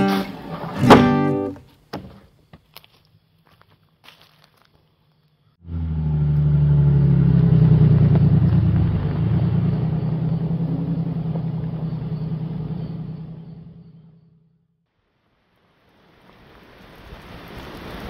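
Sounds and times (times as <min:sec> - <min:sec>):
engine humming: 0:05.6 - 0:14.7.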